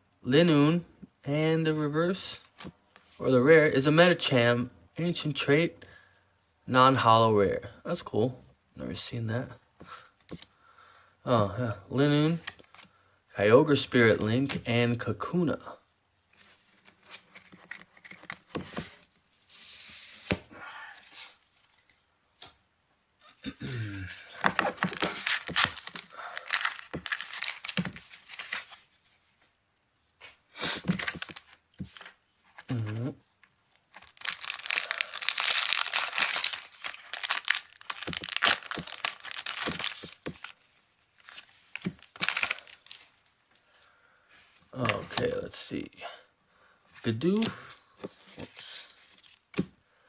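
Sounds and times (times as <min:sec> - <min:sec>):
cards clicking and rustling: 0:16.8 - 0:19.0, 0:24.4 - 0:28.9, 0:30.8 - 0:33.1, 0:33.9 - 0:40.6, 0:41.2 - 0:43.3
foil wrapper crinkling: 0:24.5 - 0:28.9, 0:33.8 - 0:43.4.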